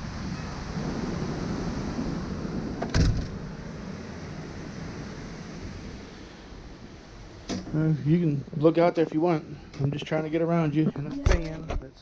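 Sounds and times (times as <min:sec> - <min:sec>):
storm wind rushing: 0:00.0 - 0:07.4.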